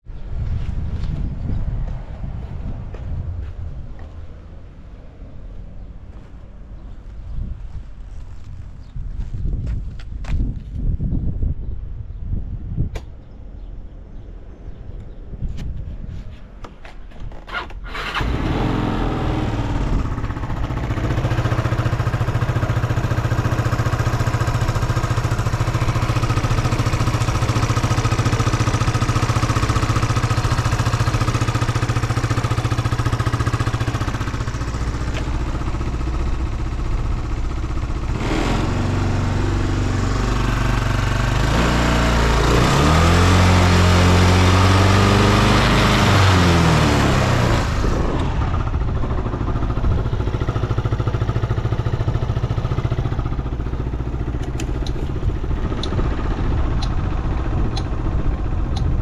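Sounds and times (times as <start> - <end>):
scooter engine idling and revving: 17.1 - 59.0.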